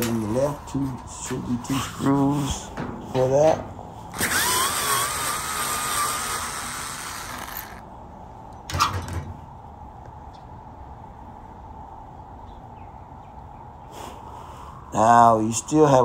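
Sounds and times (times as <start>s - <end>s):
power drill motor whining: 4.1s - 7.8s.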